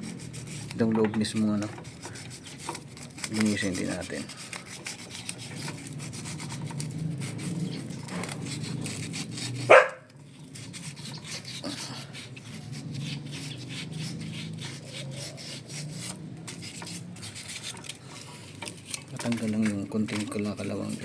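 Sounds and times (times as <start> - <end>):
sandpaper rubbing on metal: 0.0 - 21.0
dog barking: 9.7 - 10.1.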